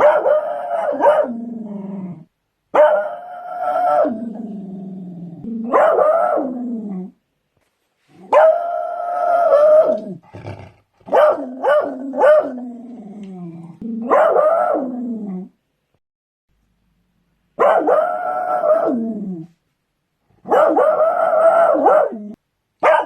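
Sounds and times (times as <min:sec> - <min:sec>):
dog barking: 0:00.0 - 0:01.4, 0:02.7 - 0:03.2, 0:05.7 - 0:06.6, 0:08.3 - 0:08.6, 0:11.1 - 0:12.6, 0:14.0 - 0:14.8, 0:17.6 - 0:19.0, 0:20.4 - 0:22.2, 0:22.8 - 0:23.0
dog howling: 0:02.9 - 0:04.4, 0:08.3 - 0:10.2, 0:17.8 - 0:19.5, 0:20.6 - 0:22.4.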